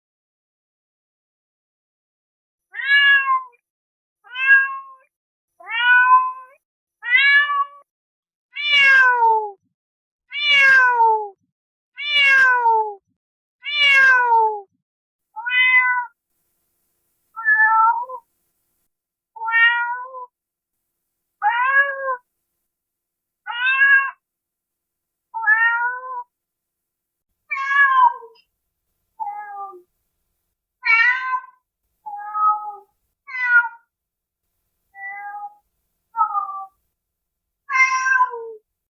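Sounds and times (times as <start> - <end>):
cat meowing: 2.7 - 3.5, 4.3 - 5.0, 5.6 - 6.4, 7.0 - 7.8, 15.4 - 16.1, 17.4 - 18.2, 19.4 - 20.3, 21.4 - 22.2, 23.5 - 24.2, 25.4 - 26.3, 27.5 - 28.4, 29.2 - 29.8, 30.8 - 33.9, 35.0 - 35.6, 36.2 - 36.8, 37.7 - 38.6.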